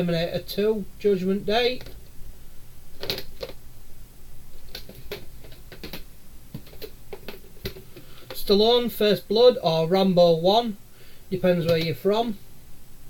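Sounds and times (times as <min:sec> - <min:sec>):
plastic videotape cases clicking: 0:03.0 - 0:03.6, 0:04.5 - 0:08.4.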